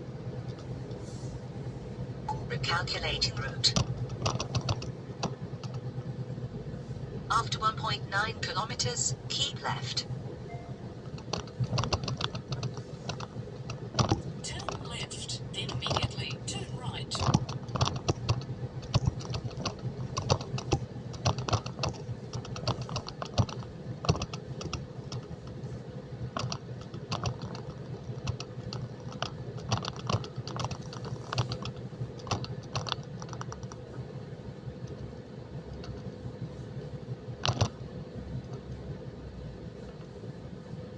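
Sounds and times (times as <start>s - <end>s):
truck engine humming: 0.0s - 17.8s
sharp clicks and rattles: 3.6s - 5.9s, 11.2s - 25.2s, 26.4s - 33.8s.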